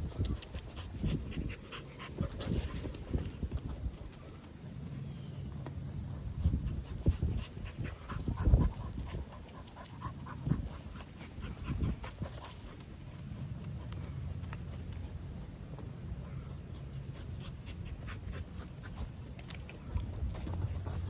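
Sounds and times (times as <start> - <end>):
animal breathing: 0.0 - 5.3, 5.9 - 21.0
knocks and rustles: 19.8 - 21.0.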